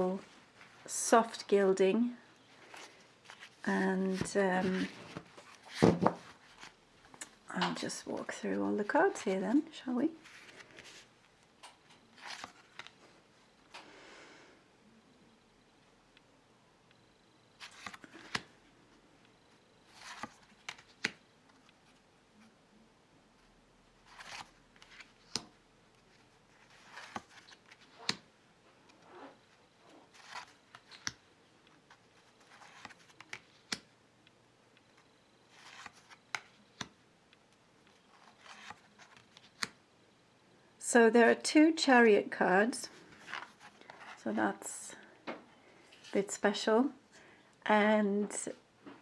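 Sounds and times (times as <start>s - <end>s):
cards sliding rustle: 2.5s - 7.4s, 10.2s - 11.1s, 12.1s - 13.1s, 17.6s - 18.6s, 19.9s - 22.5s, 24.0s - 28.3s, 28.9s - 33.9s, 34.9s - 37.0s, 37.8s - 39.8s, 43.0s - 44.2s.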